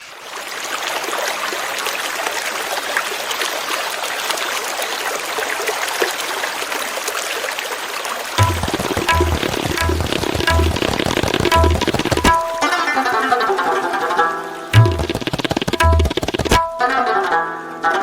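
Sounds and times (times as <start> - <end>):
stream water running: 0.0 - 13.8
tabla music: 8.4 - 13.1, 14.8 - 17.5.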